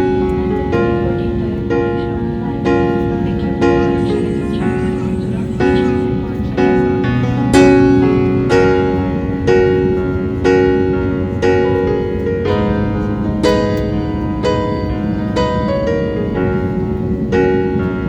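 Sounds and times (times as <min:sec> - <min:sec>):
slow piano music: 0:00.0 - 0:18.0.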